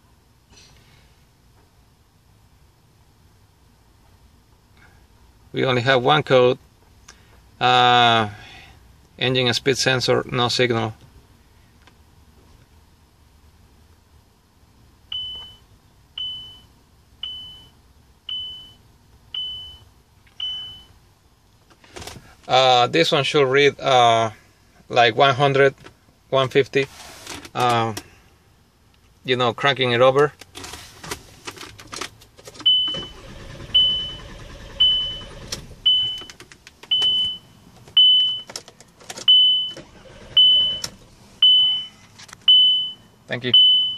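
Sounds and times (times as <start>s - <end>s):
starter cranking engine: 32.9s - 35.9s, 39.8s - 41.0s.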